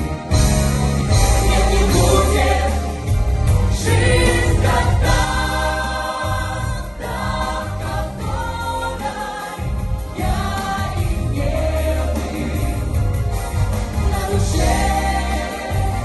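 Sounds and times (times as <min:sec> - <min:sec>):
pop choir singing: 0:00.3 - 0:16.0
heavy steady bass line: 0:09.6 - 0:16.0.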